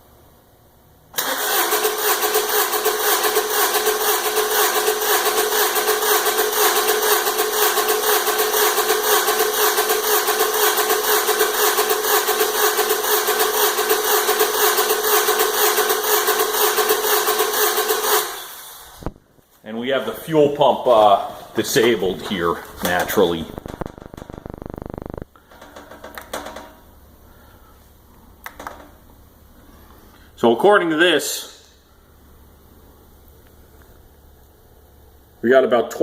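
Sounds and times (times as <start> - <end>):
car engine cranking on starter: 1.2 - 19.0.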